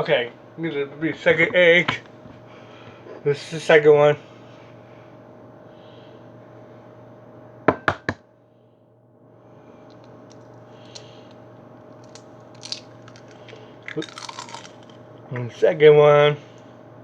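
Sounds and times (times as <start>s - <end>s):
steady hum: 0.0s - 17.0s
egg cracking on hard edge: 12.0s - 15.0s.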